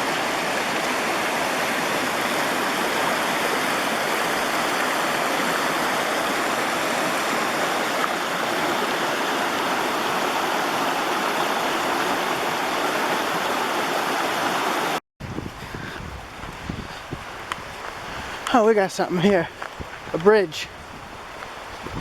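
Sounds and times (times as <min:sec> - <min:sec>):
creek water rushing: 0:00.0 - 0:15.0.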